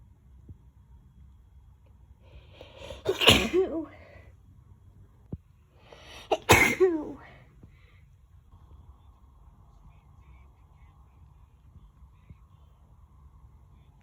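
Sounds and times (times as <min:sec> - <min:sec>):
breathy in-breath: 0:02.2 - 0:03.1, 0:05.8 - 0:06.4
woman sneezing: 0:02.7 - 0:04.1, 0:06.2 - 0:07.4.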